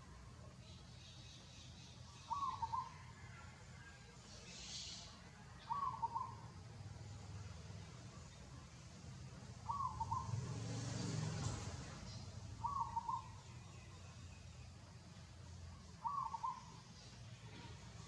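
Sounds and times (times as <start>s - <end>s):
bird calling: 1.1s - 3.3s, 4.5s - 6.5s, 9.6s - 10.4s, 12.1s - 13.9s, 15.8s - 17.2s.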